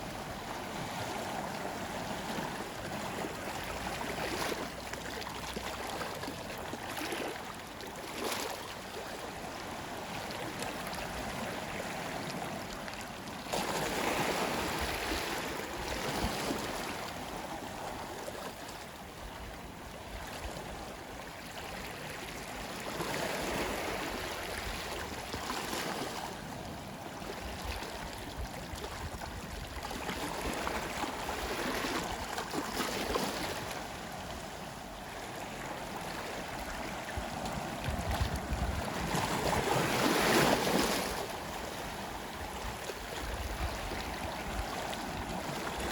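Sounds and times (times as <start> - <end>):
sea waves washing onto shore: 22.3 - 45.9.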